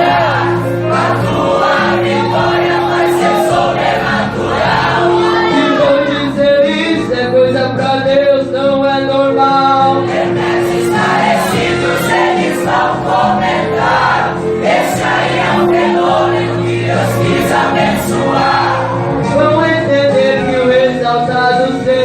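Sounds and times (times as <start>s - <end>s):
choir singing a hymn: 0.0s - 6.4s, 9.7s - 19.8s
instrumental backing: 0.0s - 22.0s.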